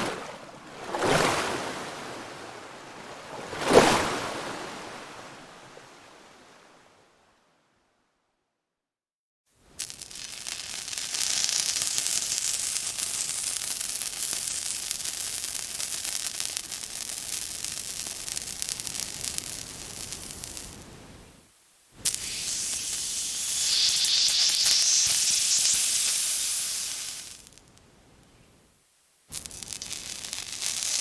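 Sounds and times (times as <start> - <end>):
water spraying hiss: 9.8 - 21.3, 22.0 - 27.8, 29.3 - 31.0.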